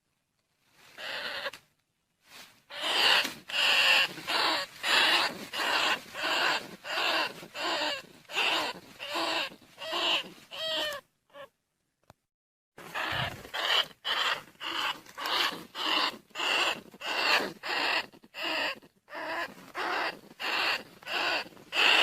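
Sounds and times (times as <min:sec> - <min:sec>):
rat squeaking calls: 0:01.0 - 0:01.6, 0:02.7 - 0:11.5, 0:12.8 - 0:22.0.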